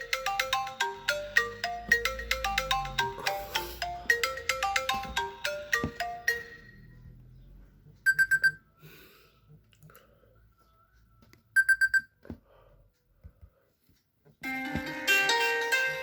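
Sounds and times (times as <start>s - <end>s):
phone alert beeps: 8.0s - 8.6s, 11.6s - 12.2s.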